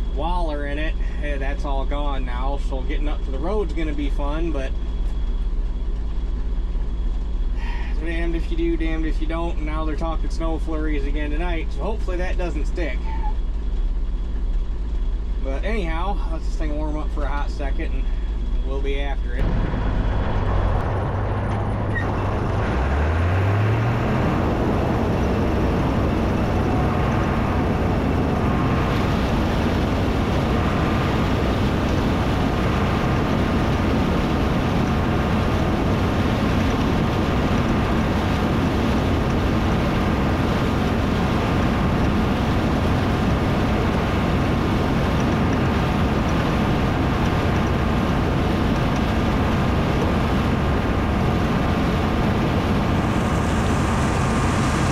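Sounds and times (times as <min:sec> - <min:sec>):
diesel engine revving: 0:19.4 - 0:54.9.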